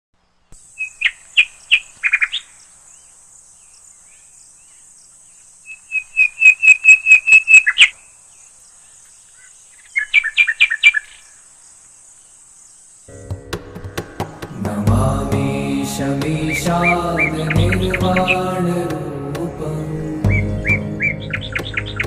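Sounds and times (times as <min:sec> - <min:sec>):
bird singing: 0:00.2 - 0:14.9, 0:15.6 - 0:18.8, 0:20.1 - 0:22.0
high insect buzz: 0:00.4 - 0:14.6.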